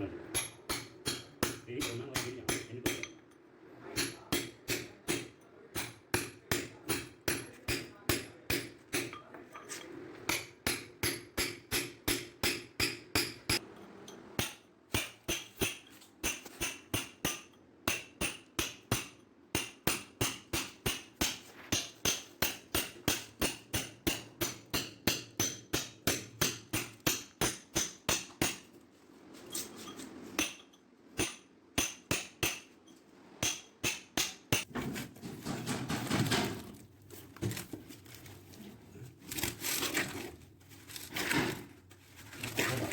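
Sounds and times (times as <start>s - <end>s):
rough scraping and crunching: 36.6s - 42.9s.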